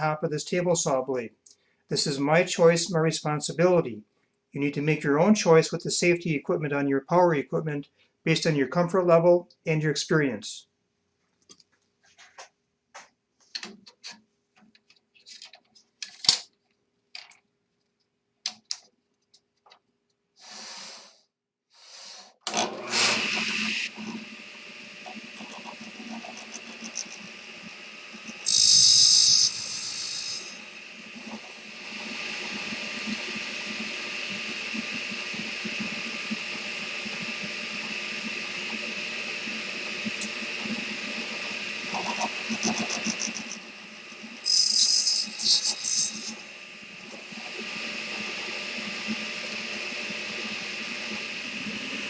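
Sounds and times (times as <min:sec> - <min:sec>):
table saw cutting wood: 0:21.8 - 0:52.0.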